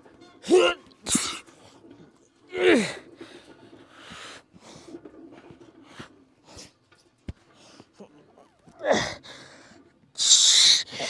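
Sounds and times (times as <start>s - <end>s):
forceful breaths and exhales: 2.7s - 6.8s.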